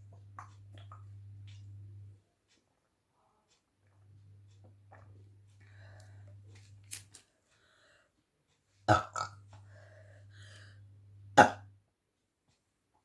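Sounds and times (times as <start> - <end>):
woman burping: 8.9 - 9.4, 11.4 - 11.7.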